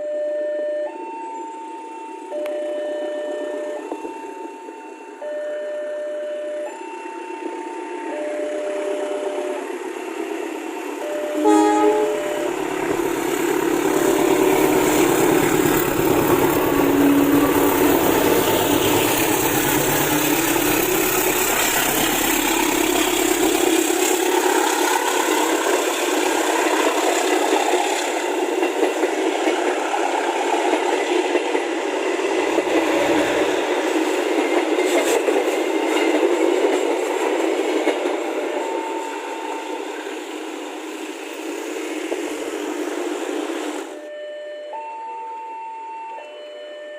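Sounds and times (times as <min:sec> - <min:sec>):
deep train rumble: 0:07.7 - 0:44.0
train wheels rushing past: 0:08.7 - 0:44.0.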